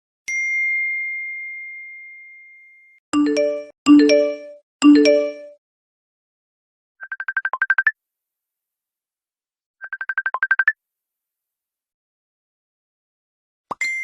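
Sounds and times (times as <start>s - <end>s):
high notification ding: 3.2s - 5.6s
short bell-like chimes: 3.2s - 5.6s.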